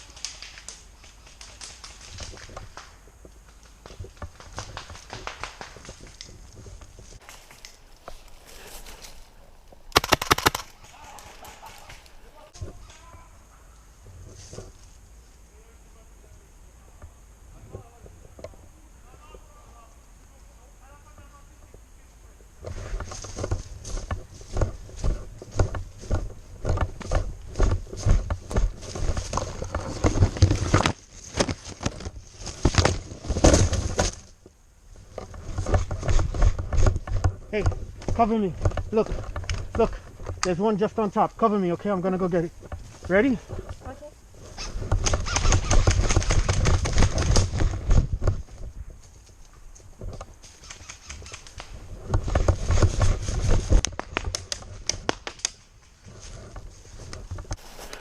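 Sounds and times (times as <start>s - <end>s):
rustling: 0.0s - 58.0s
hurried footsteps: 1.7s - 13.2s, 22.6s - 34.3s
gear rustling: 5.9s - 12.5s
sharp clicks and snaps: 9.9s - 12.1s, 53.8s - 55.6s.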